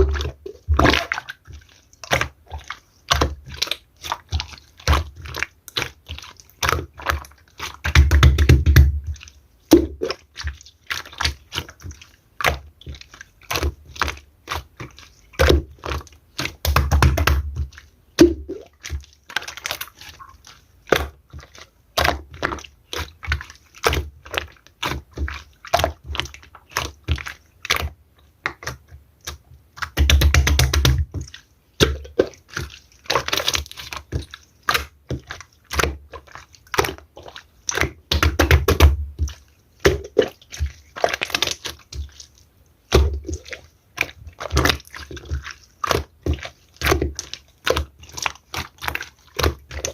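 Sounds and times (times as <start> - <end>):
slime clicking and popping: 20.9 - 42.2, 42.9 - 49.9.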